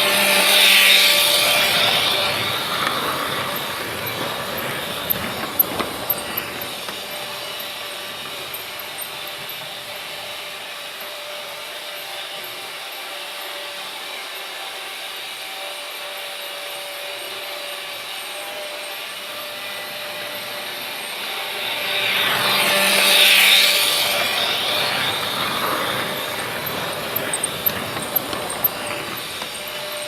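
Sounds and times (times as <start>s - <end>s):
freight train rumbling past: 0.0s - 10.7s, 19.5s - 30.0s.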